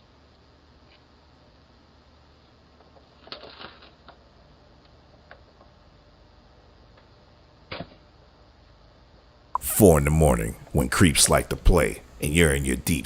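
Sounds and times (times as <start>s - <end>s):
small clicks and rustles: 2.8s - 5.8s
faint steady hiss: 8.4s - 13.0s.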